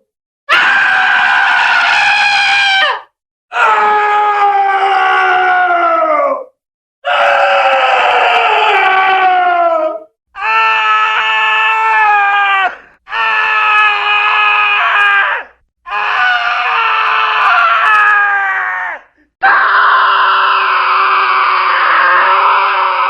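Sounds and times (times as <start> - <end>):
man screaming: 7.1 - 23.0.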